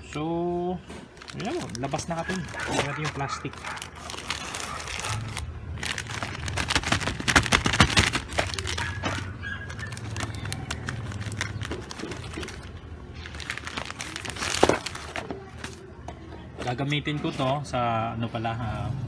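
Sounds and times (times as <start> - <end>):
plastic packaging crinkling: 0.9 - 15.8.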